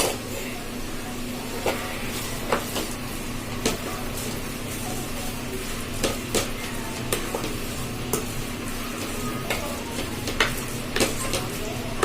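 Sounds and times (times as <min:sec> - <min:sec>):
vegetables sizzling in a pan: 0:00.0 - 0:12.0
utensil clicking against pan: 0:09.0 - 0:11.6.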